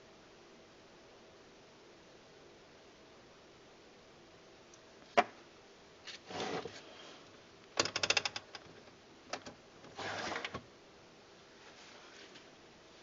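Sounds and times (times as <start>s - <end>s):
scraping rustle: 6.0s - 7.2s, 9.9s - 10.6s
rattle of sharp clicks: 7.7s - 9.6s.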